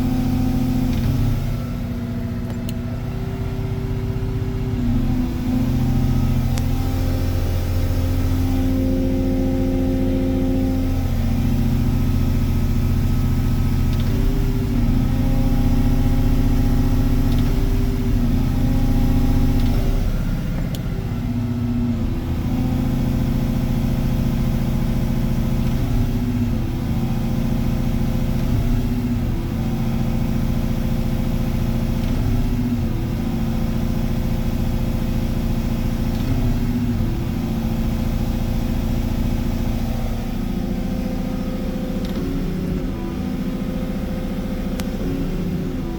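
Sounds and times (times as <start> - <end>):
excavator diesel engine running: 0.0 - 45.9.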